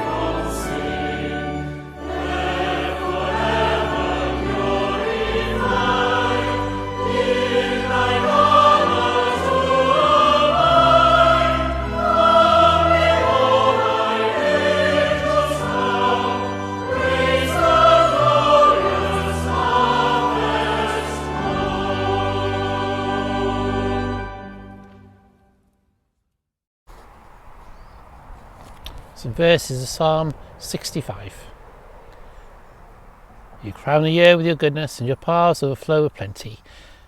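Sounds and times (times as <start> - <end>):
choir singing a hymn: 0.0 - 25.2.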